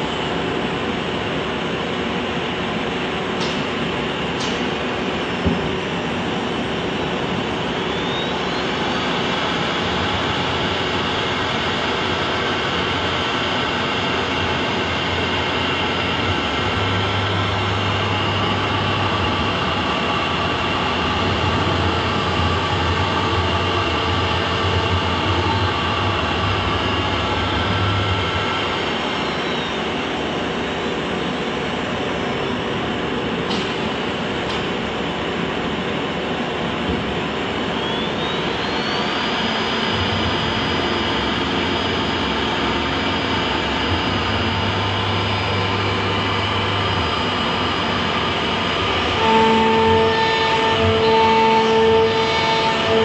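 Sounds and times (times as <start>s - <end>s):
machine noise: 0.0s - 53.0s
router spindle whine: 7.5s - 30.9s, 37.6s - 53.0s
low hum: 10.0s - 32.7s.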